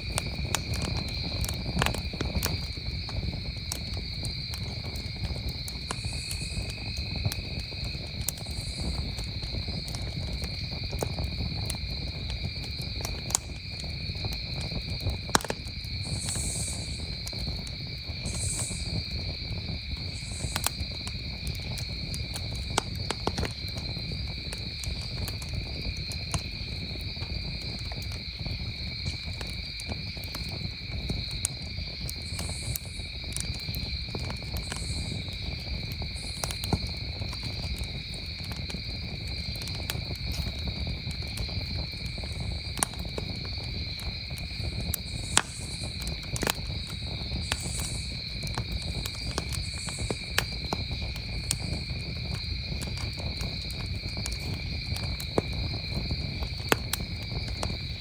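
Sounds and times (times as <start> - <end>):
campfire crackling and popping: 0.0 - 58.0
crickets trilling: 0.0 - 58.0
high insect chirps: 0.0 - 58.0.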